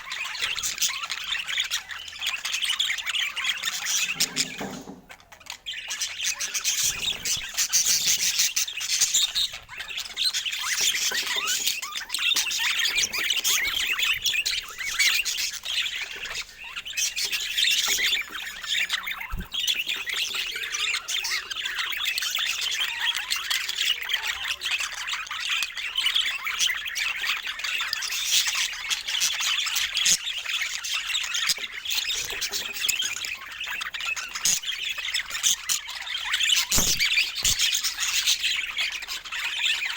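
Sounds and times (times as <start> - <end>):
budgerigars chattering: 0.0 - 39.9.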